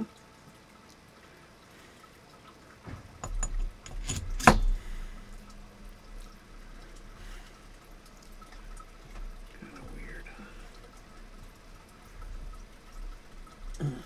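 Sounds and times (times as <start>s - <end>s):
small metal clicks and knocks: 2.9s - 5.6s.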